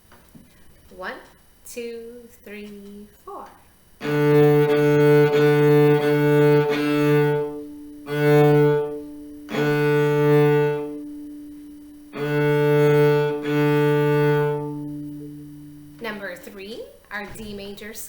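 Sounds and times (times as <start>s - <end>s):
cello bowed notes: 4.0s - 16.7s.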